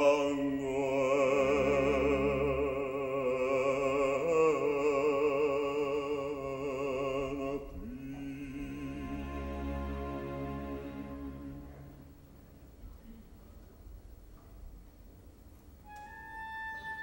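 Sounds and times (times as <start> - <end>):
operatic bass voice singing: 0.0 - 9.9
orchestra playing: 1.1 - 3.4, 8.6 - 12.5.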